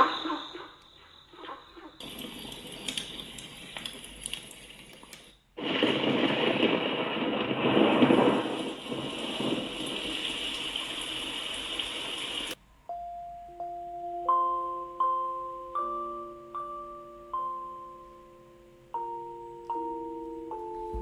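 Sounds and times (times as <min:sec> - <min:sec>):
water sound: 0:07.4 - 0:12.6
rushing water: 0:07.6 - 0:12.6.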